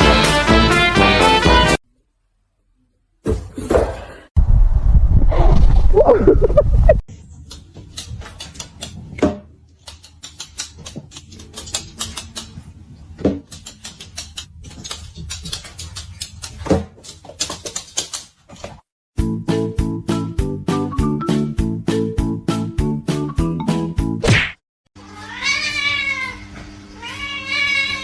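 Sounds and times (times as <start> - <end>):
music: 0.0 - 1.8, 19.2 - 24.2
rapid irregular clicking and tapping: 7.4 - 9.1, 9.7 - 12.7, 13.4 - 18.4.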